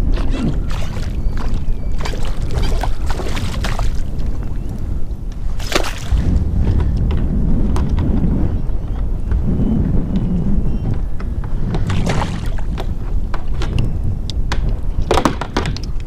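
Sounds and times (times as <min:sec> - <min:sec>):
wind buffeting microphone: 0:00.0 - 0:16.0
water splashes and clicks: 0:00.1 - 0:04.4, 0:05.3 - 0:06.3, 0:11.9 - 0:12.9.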